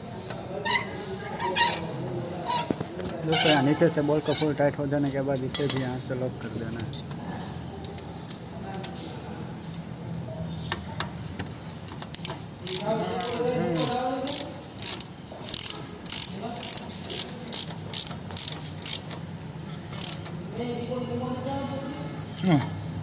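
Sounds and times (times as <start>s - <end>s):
ratchet wrench clicking: 12.0s - 19.3s, 20.0s - 20.4s.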